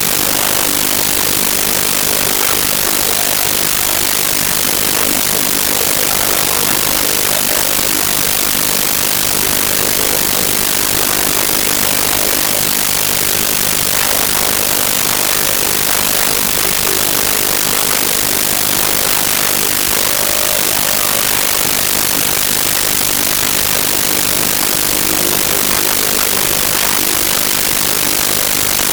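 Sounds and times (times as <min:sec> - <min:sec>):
faint voices: 0:00.0 - 0:28.9
loud static hiss: 0:00.0 - 0:28.9.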